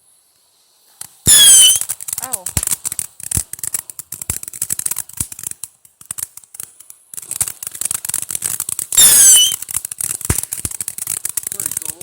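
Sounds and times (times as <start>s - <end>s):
fireworks crackling pops: 0.0s - 12.0s
firework burst with falling whistle: 1.2s - 1.9s, 8.9s - 9.7s.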